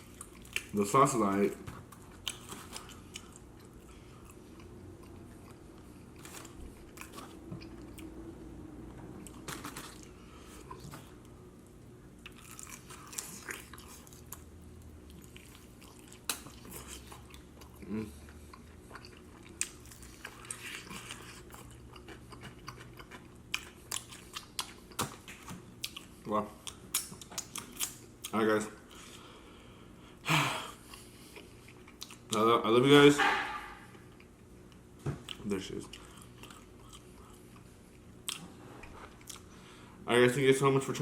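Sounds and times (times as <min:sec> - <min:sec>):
person chewing and lip smacking: 0:00.0 - 0:00.8, 0:01.9 - 0:08.2, 0:12.2 - 0:29.2, 0:30.8 - 0:32.4, 0:33.9 - 0:39.5.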